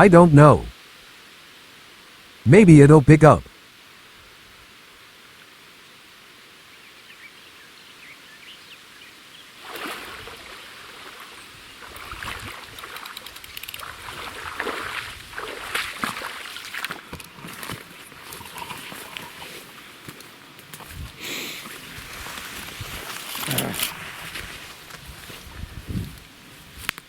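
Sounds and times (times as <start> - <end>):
river water flowing: 9.5 - 20.6
water splashing and sloshing: 9.6 - 20.1.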